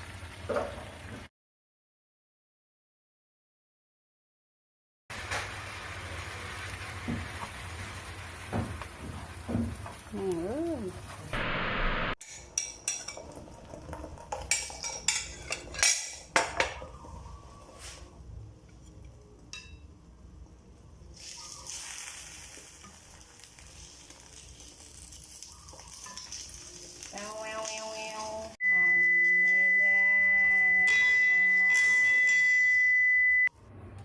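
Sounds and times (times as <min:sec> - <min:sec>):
egg sizzling in hot oil: 0:12.2 - 0:16.3, 0:21.1 - 0:31.0
pitched tone: 0:28.6 - 0:33.5
steady high beep: 0:28.6 - 0:33.5.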